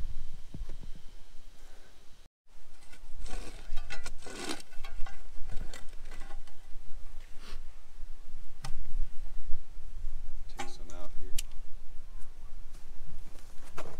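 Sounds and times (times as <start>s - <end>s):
shovel digging in soil: 2.7s - 6.4s.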